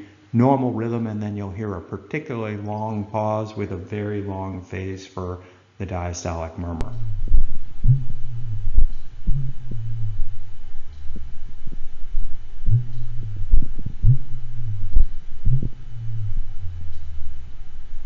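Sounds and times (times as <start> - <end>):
horse heartbeats: 6.8 - 18.0
low heart murmur: 6.8 - 18.0.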